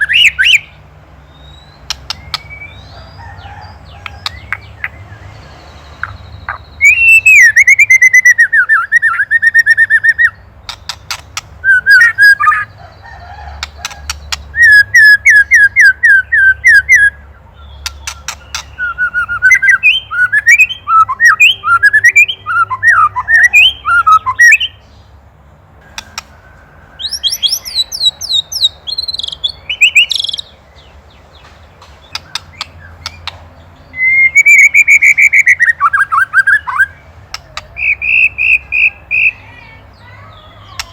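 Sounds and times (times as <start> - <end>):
bird singing whistled trills: 0.0 - 3.0, 5.8 - 12.7, 14.5 - 24.8, 25.9 - 30.6, 32.1 - 39.6
bird clicking chatter: 10.6 - 11.6, 13.4 - 14.8, 17.8 - 19.8, 25.8 - 26.4, 31.4 - 33.5, 37.3 - 39.3.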